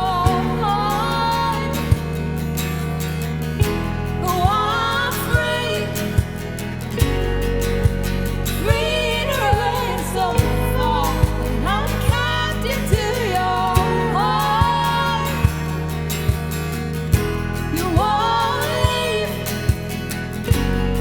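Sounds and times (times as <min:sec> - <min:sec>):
person singing worship song: 0:00.0 - 0:02.6, 0:04.2 - 0:06.7, 0:08.6 - 0:16.4, 0:17.7 - 0:20.2
sustained bass notes: 0:00.0 - 0:21.0.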